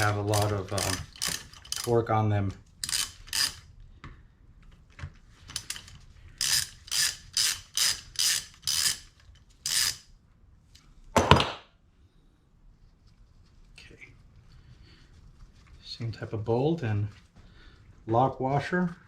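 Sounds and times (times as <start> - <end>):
socket ratchet wrench ratcheting: 0.0 - 2.0, 2.8 - 3.6, 5.5 - 10.1.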